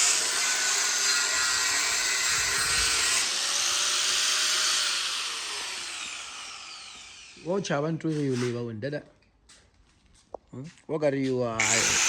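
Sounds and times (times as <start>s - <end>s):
power tool whining: 0.0s - 7.6s, 11.6s - 12.0s.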